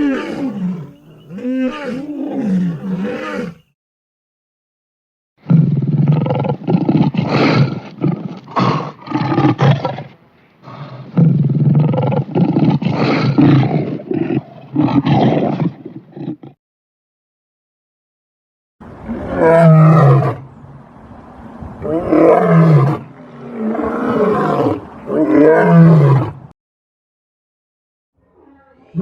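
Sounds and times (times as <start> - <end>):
lion roaring and grunting: 0.0 - 3.7, 5.4 - 16.6, 19.0 - 20.4, 21.8 - 26.5.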